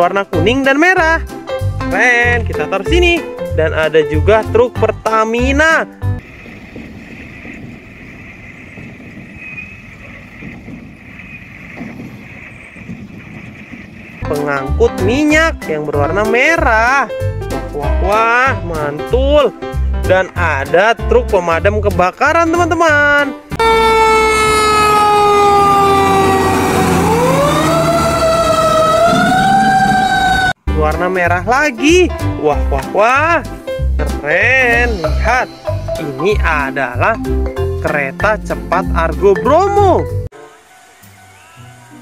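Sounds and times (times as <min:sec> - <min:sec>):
fire truck siren wailing: 0:23.5 - 0:30.6, 0:40.3 - 0:42.0.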